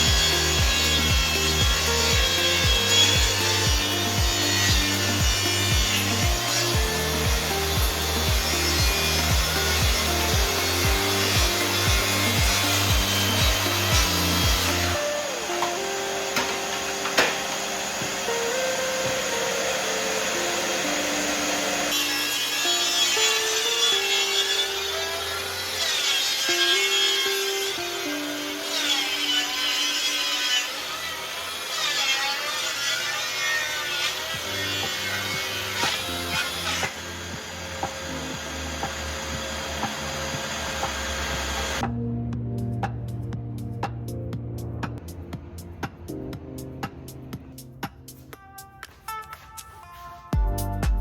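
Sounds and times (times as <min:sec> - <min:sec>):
background music with bass: 0:00.0 - 0:17.2, 0:34.3 - 0:51.0
power saw cutting wood: 0:00.0 - 0:41.9.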